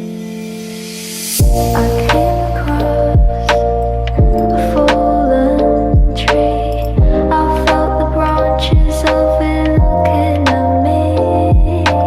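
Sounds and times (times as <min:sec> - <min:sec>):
deep falling drum: 0:01.4 - 0:01.8, 0:06.0 - 0:06.2, 0:08.8 - 0:09.0
deep bass: 0:01.4 - 0:12.0.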